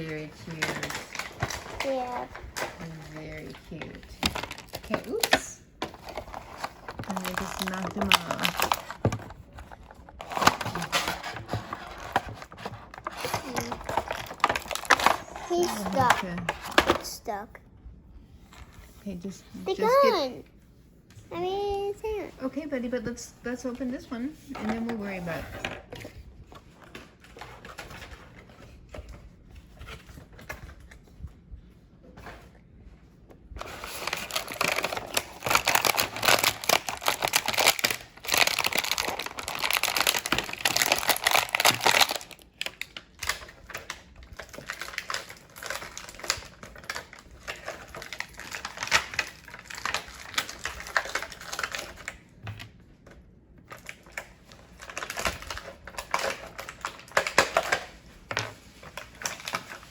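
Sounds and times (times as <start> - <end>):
plastic packaging crinkling: 0.0 - 17.0, 33.6 - 52.8, 53.6 - 59.9.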